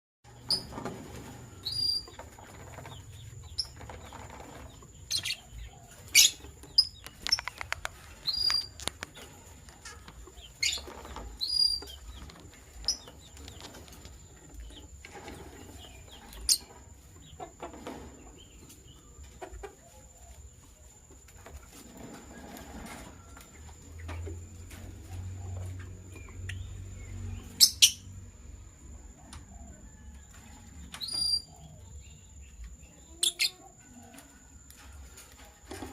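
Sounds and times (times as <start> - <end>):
birds rustling and clicking: 0.3 - 26.7, 32.6 - 35.9
lovebirds chirping: 1.6 - 17.6, 25.4 - 28.2, 30.7 - 34.1.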